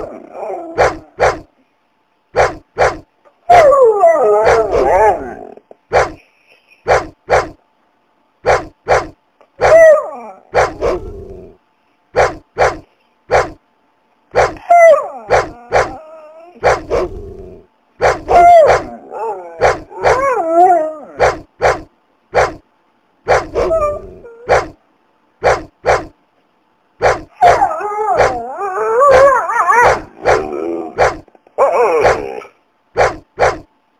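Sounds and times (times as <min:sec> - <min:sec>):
dogs barking aggressively: 0:00.8 - 0:01.5, 0:02.4 - 0:03.7, 0:05.9 - 0:06.2, 0:06.8 - 0:07.6, 0:08.4 - 0:09.8, 0:10.5 - 0:11.1, 0:15.3 - 0:16.0, 0:16.6 - 0:17.2, 0:19.6 - 0:20.3, 0:23.3 - 0:24.8, 0:27.0 - 0:28.4, 0:29.1 - 0:31.3, 0:33.0 - 0:33.7
dogs wavering cries: 0:02.4 - 0:06.1, 0:08.5 - 0:11.2, 0:14.4 - 0:17.3, 0:18.0 - 0:21.5, 0:23.3 - 0:24.8, 0:27.0 - 0:33.6.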